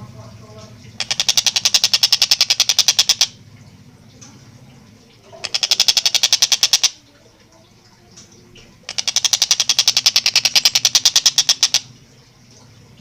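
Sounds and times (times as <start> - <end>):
kingfisher rapid chatter: 0.8 - 3.4, 5.2 - 7.4, 8.8 - 11.9.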